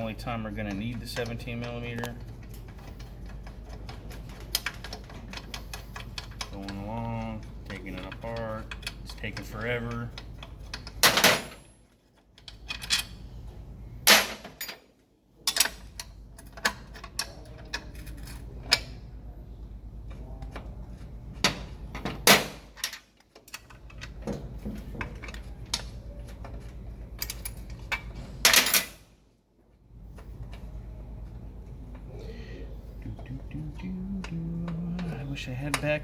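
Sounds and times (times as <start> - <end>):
wrenches clinking on metal: 0.0 - 13.2, 14.1 - 19.0, 21.4 - 29.1
steady low hum: 0.0 - 36.0.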